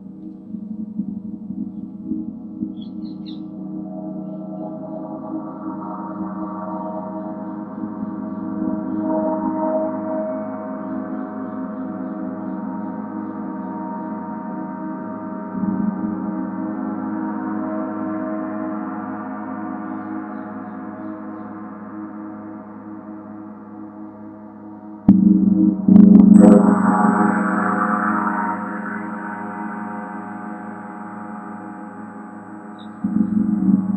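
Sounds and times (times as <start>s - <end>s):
gong struck hard: 25.0s - 33.9s
gong ringing: 25.1s - 33.9s.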